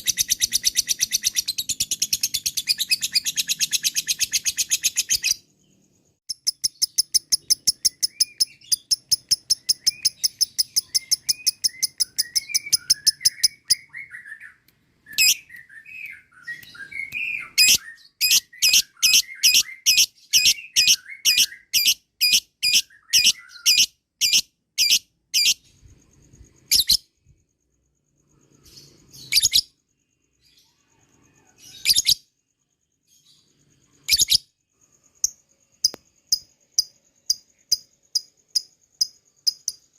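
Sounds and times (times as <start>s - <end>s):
lovebird chattering: 0.0s - 5.4s, 6.3s - 14.1s, 15.2s - 25.7s
soft bird twittering: 0.0s - 39.9s.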